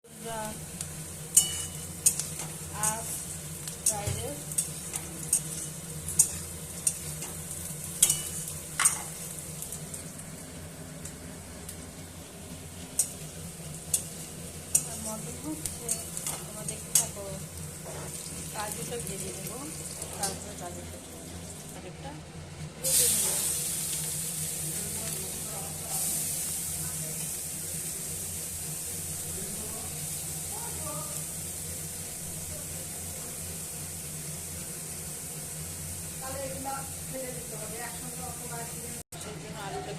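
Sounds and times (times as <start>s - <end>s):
food sizzling in hot oil: 0.0s - 39.8s
spatula scraping a pan: 17.8s - 18.4s.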